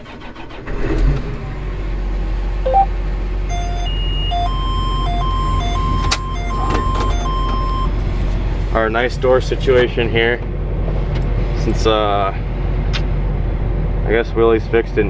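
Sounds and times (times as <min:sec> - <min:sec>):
tractor engine starting and idling: 0:00.0 - 0:10.6
two-tone electronic warning beep: 0:02.7 - 0:02.9, 0:03.5 - 0:08.0.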